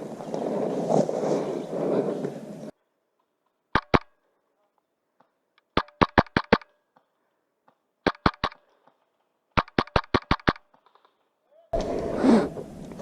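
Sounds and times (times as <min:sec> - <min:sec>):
airsoft rifle shots: 0:03.7 - 0:04.2, 0:05.6 - 0:06.9, 0:08.0 - 0:11.2.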